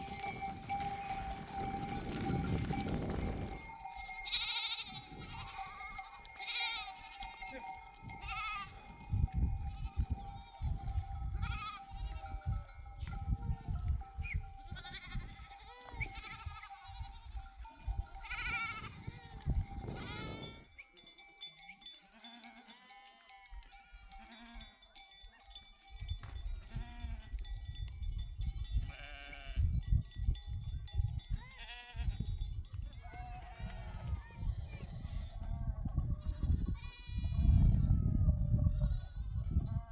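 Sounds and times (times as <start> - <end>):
sheep bleating: 0.0 - 2.0, 4.2 - 8.8, 11.4 - 12.3, 14.7 - 17.5, 18.2 - 20.7, 22.1 - 24.6, 28.9 - 29.6, 31.5 - 32.1, 33.0 - 34.1, 35.1 - 37.4
sheep bells ringing: 0.0 - 34.4, 35.1 - 39.9.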